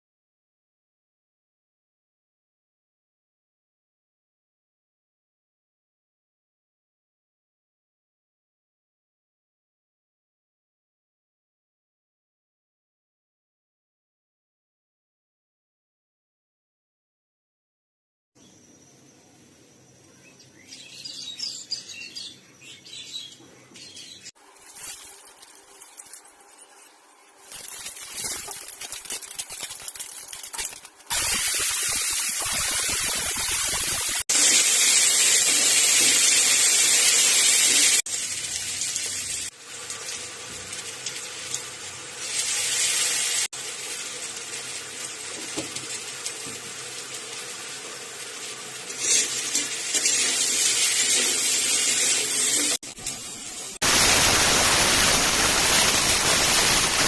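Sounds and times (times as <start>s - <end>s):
cooking hiss: 24.3s - 57.0s.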